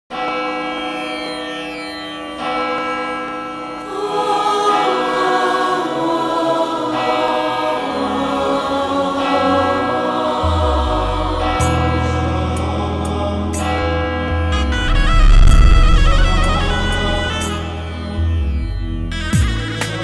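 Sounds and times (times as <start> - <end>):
wordless choir singing: 3.4 - 18.3
sustained instrumental tones: 14.4 - 19.4
low bass: 14.6 - 19.4.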